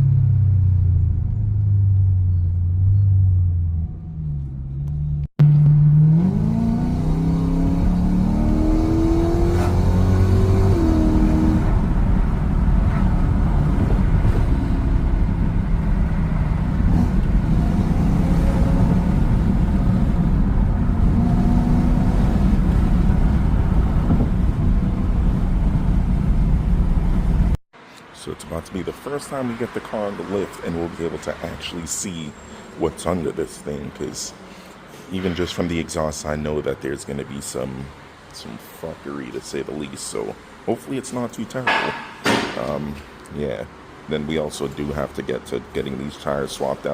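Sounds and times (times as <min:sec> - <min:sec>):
car engine with loud exhaust: 0:00.0 - 0:27.6.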